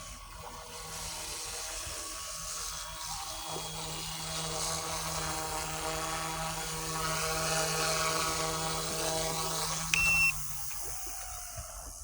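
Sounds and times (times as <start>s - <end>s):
rc helicopter buzzing: 2.0s - 12.0s.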